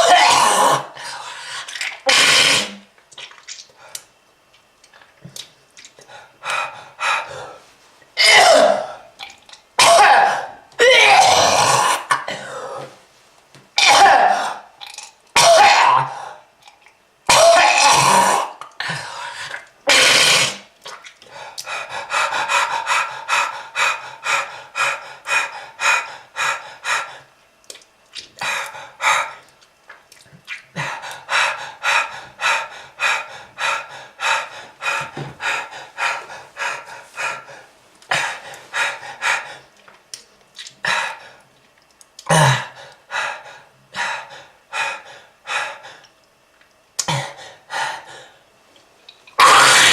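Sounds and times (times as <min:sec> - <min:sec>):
person coughing: 0:08.2 - 0:09.0, 0:09.8 - 0:12.9, 0:13.8 - 0:14.7.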